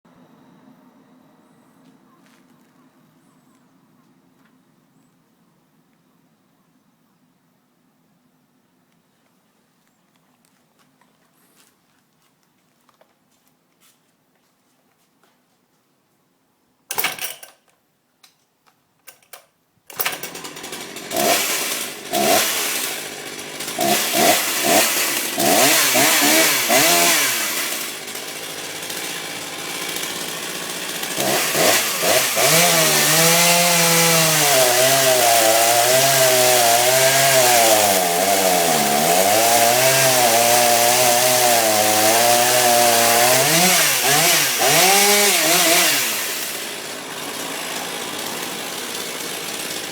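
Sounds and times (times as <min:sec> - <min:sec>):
chainsaw starting and revving: 0:19.9 - 0:49.9.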